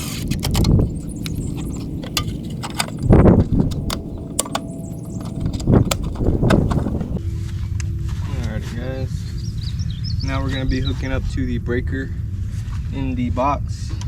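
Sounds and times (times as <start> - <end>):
muffled low thumps: 0.5 - 7.4.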